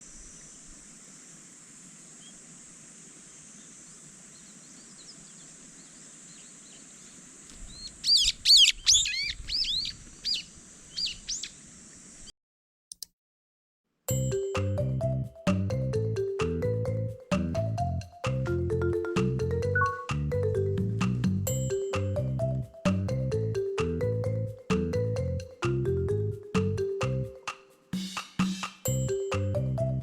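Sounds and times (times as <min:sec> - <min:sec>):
high-pitched hiss: 0:00.0 - 0:08.1
small birds chirping: 0:00.0 - 0:12.3
loud sweeping bird calls: 0:03.6 - 0:12.3
music with xylophone-like notes: 0:14.1 - 0:30.0.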